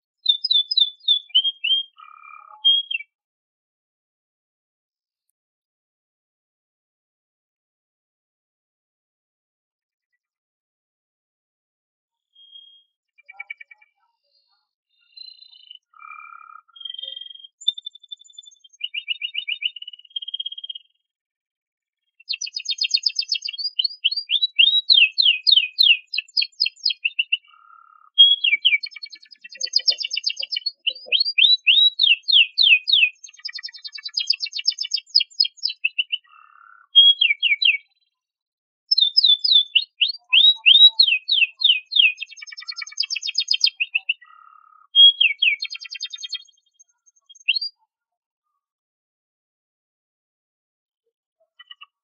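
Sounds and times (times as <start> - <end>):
canary singing trills: 0.2 - 3.2, 12.3 - 20.9, 22.2 - 38.1, 38.9 - 47.8.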